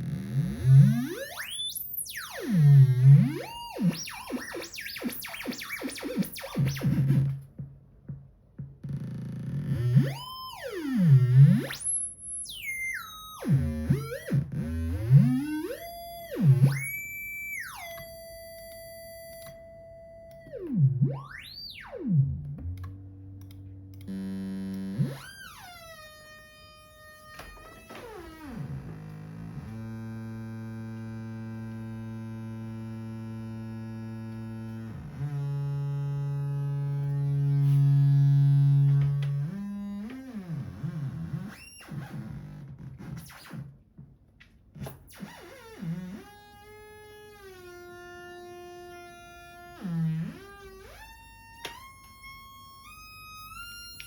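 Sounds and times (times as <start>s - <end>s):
synthesizer pitch glides and chirps: 24.1s - 26.1s.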